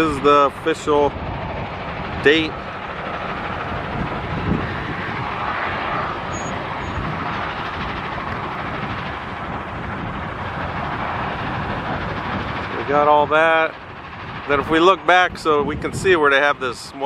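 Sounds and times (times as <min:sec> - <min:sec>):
rushing outdoor background noise: 0:00.0 - 0:17.0.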